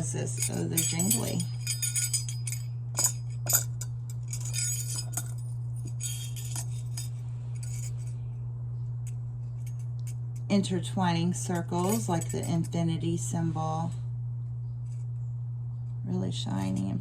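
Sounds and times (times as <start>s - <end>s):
metal necklace links clinking: 0.0s - 8.3s, 9.0s - 10.5s, 11.2s - 13.2s
steady low hum: 0.0s - 17.0s.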